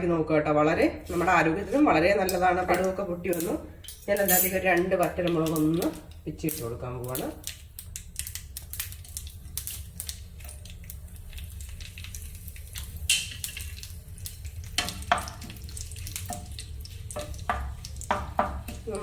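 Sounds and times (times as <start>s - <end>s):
spices sizzling in hot oil: 1.0s - 19.0s
sharp crackles and pops: 5.0s - 19.0s.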